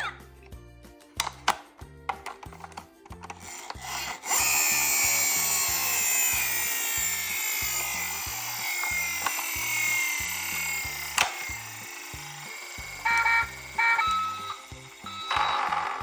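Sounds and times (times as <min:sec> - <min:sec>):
toy cars rolling on hard surface: 0:02.4 - 0:16.0.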